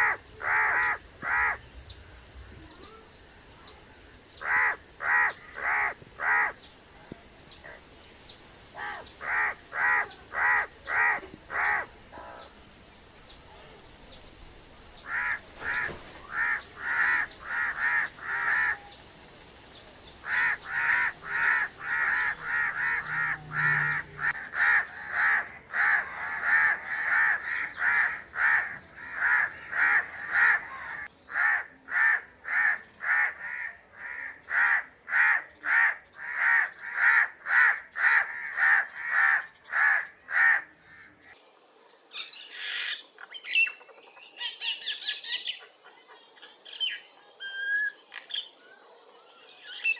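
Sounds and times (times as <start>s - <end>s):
crow cawing: 0.0s - 1.6s, 4.4s - 6.6s, 8.8s - 12.5s, 15.0s - 18.8s, 20.2s - 41.3s.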